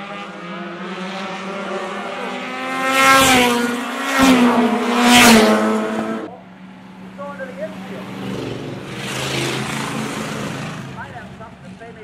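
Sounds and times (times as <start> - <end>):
race car engines at high revs: 0.0 - 12.0
race cars passing by: 0.0 - 12.0.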